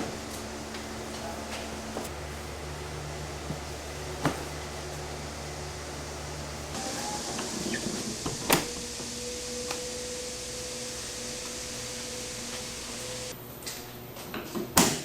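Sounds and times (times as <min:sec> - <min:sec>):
machine hum: 0:00.0 - 0:13.6.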